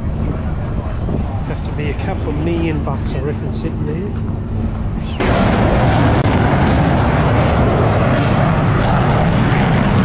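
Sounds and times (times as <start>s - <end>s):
aircraft engine noise: 0.0s - 10.0s.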